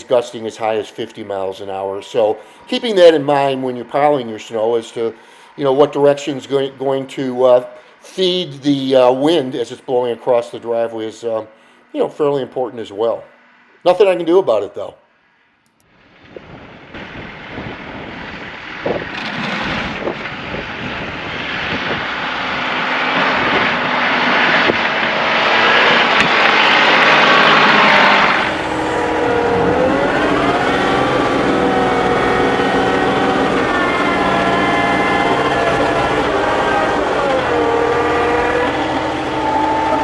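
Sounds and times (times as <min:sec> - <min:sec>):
tractor diesel engine running: 0:26.3 - 0:40.0.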